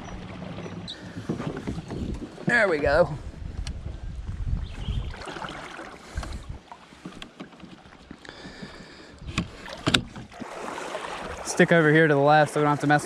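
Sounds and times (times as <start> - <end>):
water around canoe hull: 0.0 - 13.0.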